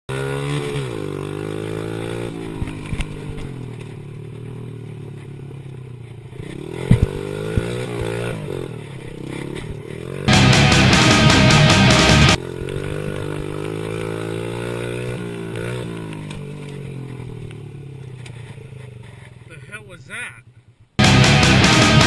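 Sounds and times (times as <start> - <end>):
pit bike engine revving: 0.1 - 19.3, 20.8 - 22.0
loud rock music: 10.3 - 12.4, 21.0 - 22.0.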